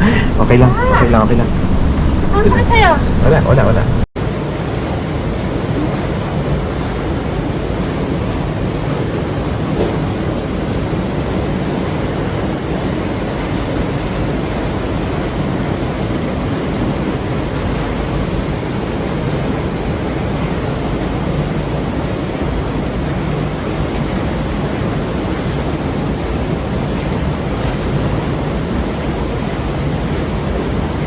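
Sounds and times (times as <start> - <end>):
waterfall rushing: 4.2 - 31.0.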